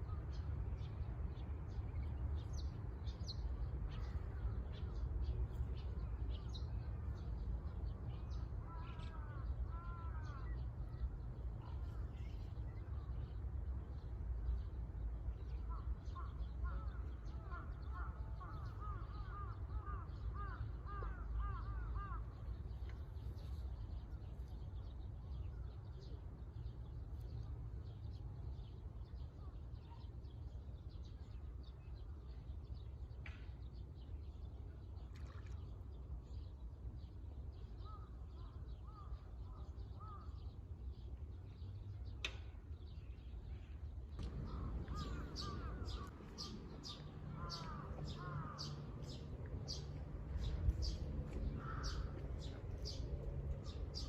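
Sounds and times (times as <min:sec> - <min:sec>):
small birds chirping: 0:41.6 - 0:54.0
low outdoor rumble: 0:43.5 - 0:54.0
crows cawing: 0:44.4 - 0:46.1, 0:47.3 - 0:48.8, 0:51.6 - 0:52.2.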